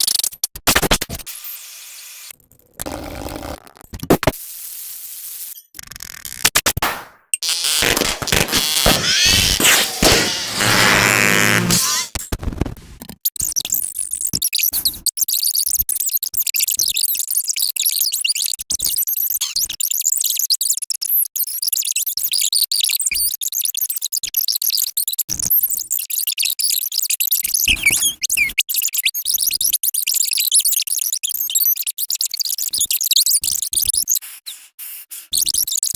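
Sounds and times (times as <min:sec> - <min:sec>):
high-pitched chirps and squeaks: 0:07.4 - 0:12.2.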